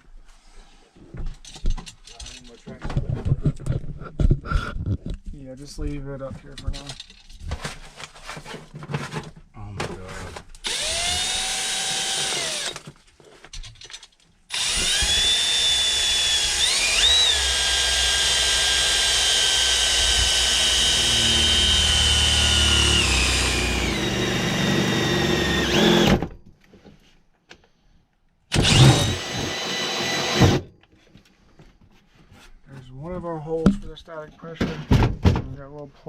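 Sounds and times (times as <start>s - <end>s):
power drill whining: 10.6s - 12.9s, 14.5s - 26.3s, 28.5s - 30.7s.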